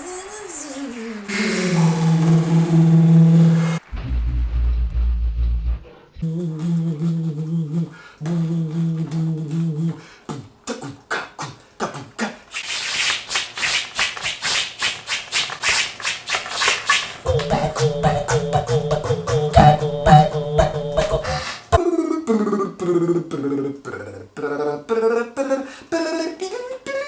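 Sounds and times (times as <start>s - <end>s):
beatboxing rhythm: 6.2s - 12.6s, 17.3s - 27.0s
fast clicking percussion: 16.6s - 21.8s.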